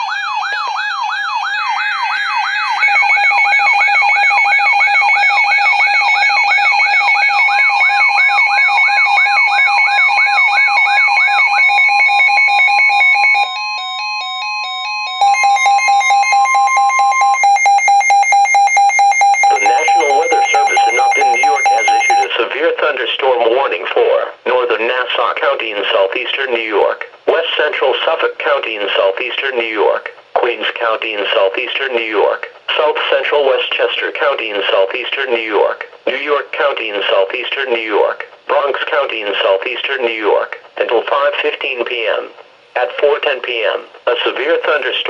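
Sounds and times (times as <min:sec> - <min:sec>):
steady alarm tone: 0:00.0 - 0:22.3
wailing siren: 0:00.0 - 0:22.3
rapid electronic beeping: 0:15.1 - 0:22.3
announcer speaking: 0:19.3 - 0:45.0.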